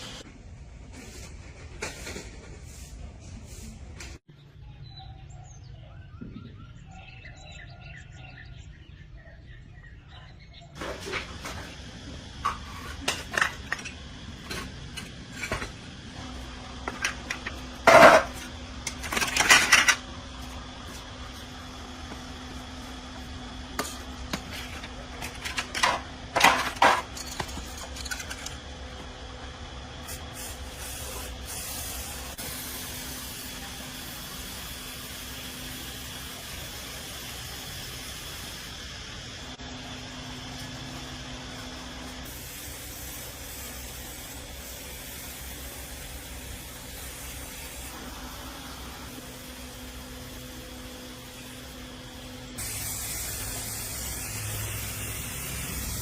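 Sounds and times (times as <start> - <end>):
metal tools clinking and knocking: 25.2 - 28.6
steady hiss: 42.2 - 50.6, 52.6 - 56.0.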